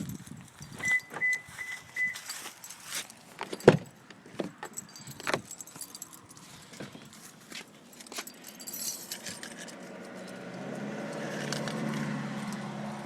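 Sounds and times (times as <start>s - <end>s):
car keys jangling: 0.0s - 10.5s
short high beeps: 0.8s - 2.2s.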